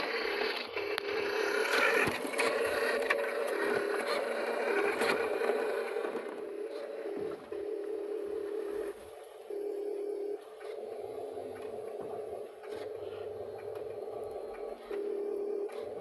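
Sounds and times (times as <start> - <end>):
small electric motors whirring: 0.0 - 9.0.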